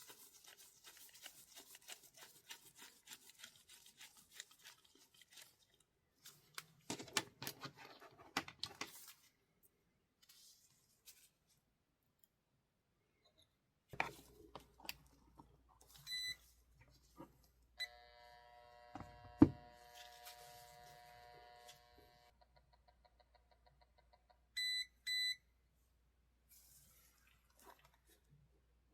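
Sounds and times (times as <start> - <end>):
multi-tone electronic hum: 17.8 - 22.3.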